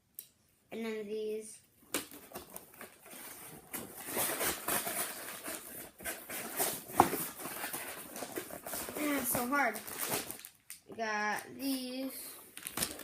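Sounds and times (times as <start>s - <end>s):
plastic packaging crinkling: 2.6s - 10.8s, 12.5s - 13.0s.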